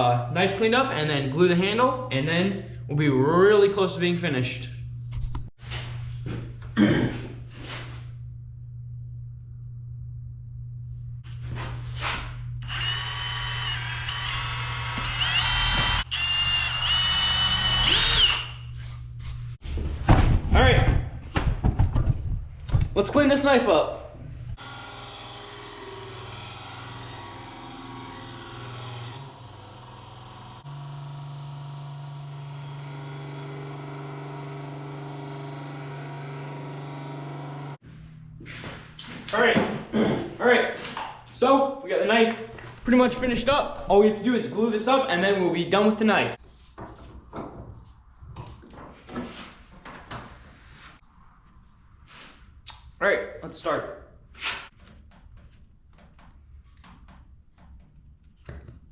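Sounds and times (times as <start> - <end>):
electric drill whining: 12.6 - 18.7
power tool motor humming: 12.6 - 18.7, 24.6 - 37.8.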